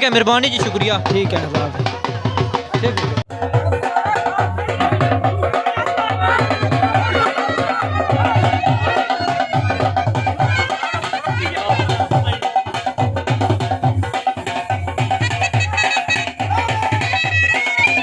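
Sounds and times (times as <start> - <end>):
drum beating steady rhythm: 0.0 - 18.0
wind instrument melody: 0.0 - 18.0.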